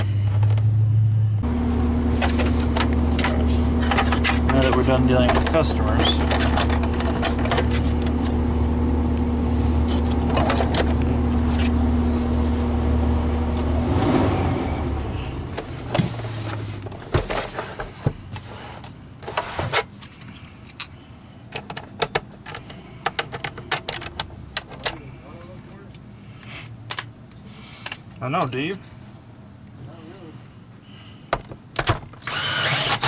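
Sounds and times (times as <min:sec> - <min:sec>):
clicks and knocks of handling: 0:19.3 - 0:25.0
electric power brush humming: 0:32.2 - 0:33.0.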